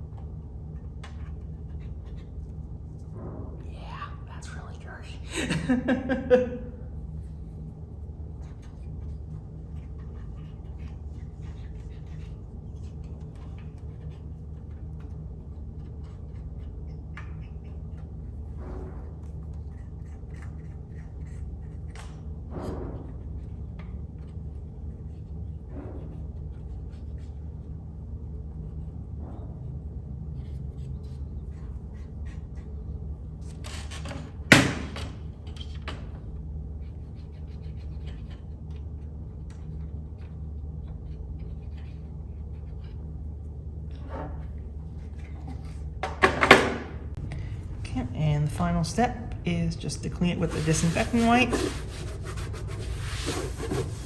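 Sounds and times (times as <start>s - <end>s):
low hum: 0.0s - 33.6s, 35.2s - 54.0s
rubbing on plastic case: 50.3s - 54.0s.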